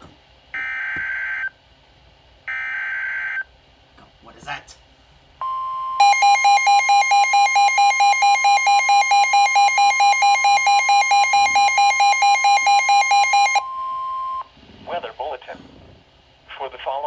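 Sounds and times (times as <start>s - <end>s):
buzzy pulsing beeps: 5.4s - 14.5s
high warning tone: 5.4s - 14.5s.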